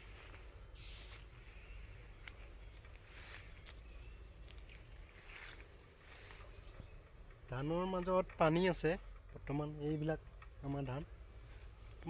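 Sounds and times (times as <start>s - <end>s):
footsteps rustling through plants: 0.0s - 6.7s
insects trilling: 0.0s - 12.0s.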